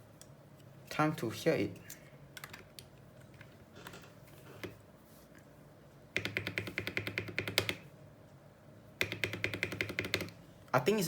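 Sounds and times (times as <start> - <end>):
mechanical keyboard keystrokes: 6.2 - 7.8, 9.0 - 10.4.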